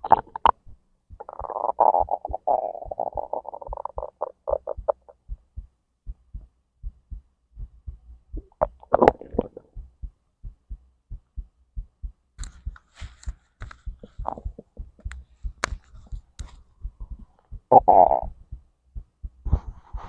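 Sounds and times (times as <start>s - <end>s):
crackling intestinal gurgles: 0.0s - 0.6s, 1.2s - 5.1s, 8.4s - 9.7s, 17.7s - 18.3s
stomach gurgle: 0.0s - 0.6s, 1.2s - 5.2s, 8.4s - 9.8s, 14.0s - 15.2s, 17.2s - 18.4s
heartbeat double thumps: 0.0s - 12.9s, 13.8s - 20.0s.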